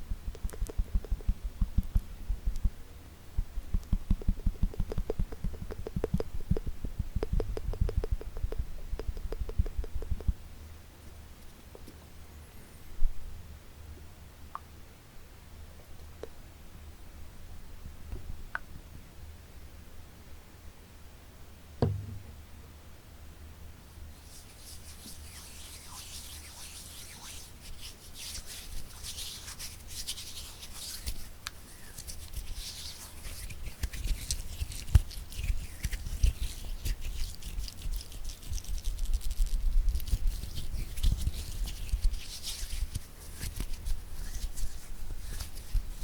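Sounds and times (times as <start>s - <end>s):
soft low taps: 21.8s - 22.5s
hands rubbing with crackles: 24.2s - 46.0s.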